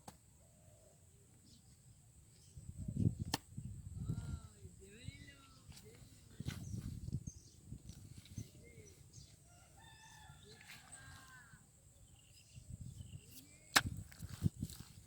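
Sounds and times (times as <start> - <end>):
rooster crowing: 9.4 - 11.6.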